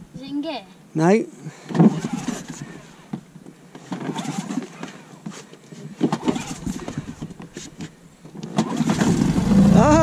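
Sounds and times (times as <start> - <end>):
outboard motor starting: 1.9 - 2.6, 8.5 - 10.0.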